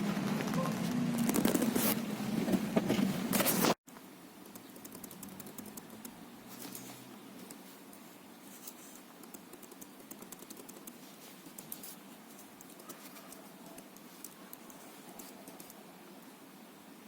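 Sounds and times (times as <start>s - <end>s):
low background hiss: 3.9s - 17.0s.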